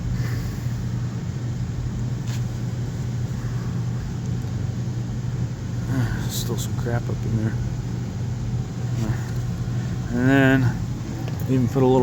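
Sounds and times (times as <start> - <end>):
motor humming: 0.0 - 12.0.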